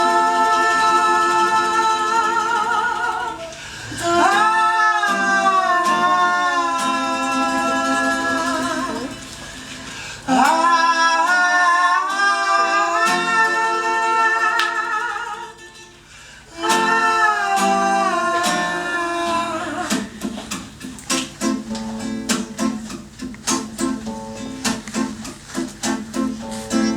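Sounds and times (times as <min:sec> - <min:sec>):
person singing with vibrato: 0:00.0 - 0:20.4
acoustic guitar: 0:00.0 - 0:26.9.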